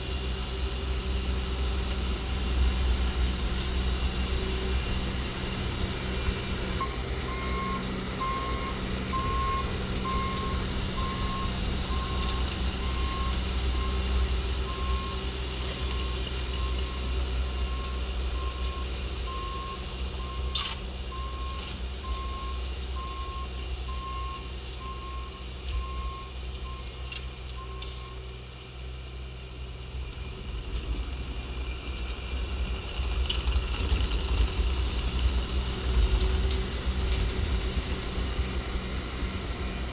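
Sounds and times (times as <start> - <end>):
diesel engine running: 0.0 - 39.9
backup alarm beeping: 6.8 - 13.9.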